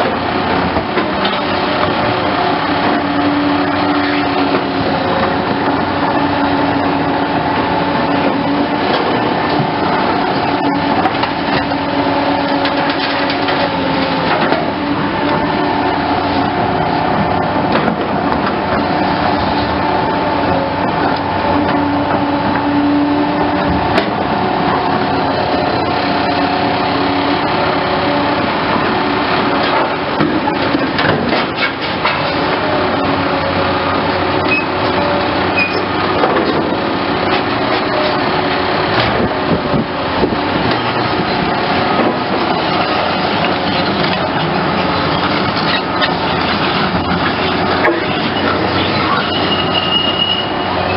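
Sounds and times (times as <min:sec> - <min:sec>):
excavator diesel engine running: 0:00.0 - 0:50.9
knocks and clanks: 0:17.2 - 0:18.9, 0:29.5 - 0:32.6.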